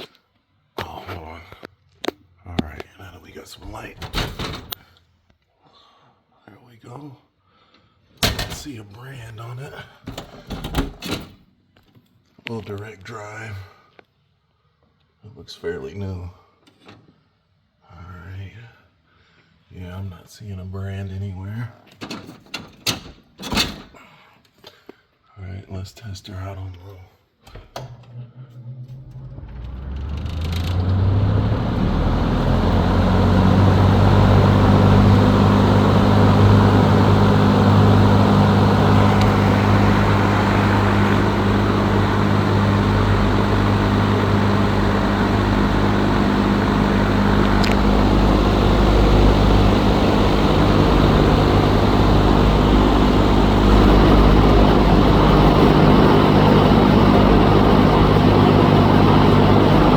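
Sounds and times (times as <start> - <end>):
ceiling fan motor hum: 29.0 - 59.9.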